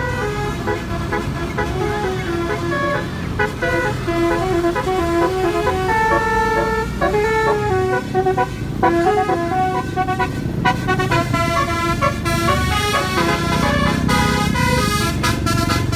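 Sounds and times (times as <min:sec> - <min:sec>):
horn playing a tune: 0:00.0 - 0:15.9.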